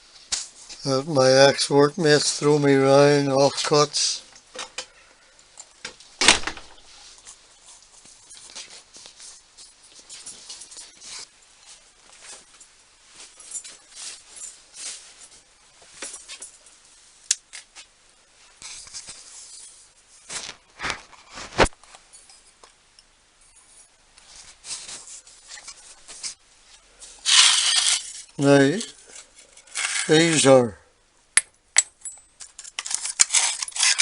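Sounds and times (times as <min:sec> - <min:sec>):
objects handled on workbench: 0:27.0 - 0:30.5.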